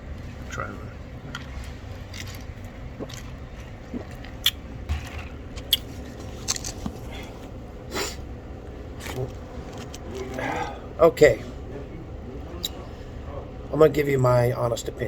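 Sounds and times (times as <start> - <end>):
steady low hum: 0.0 - 15.0
person chewing with wet smacks: 0.1 - 7.5.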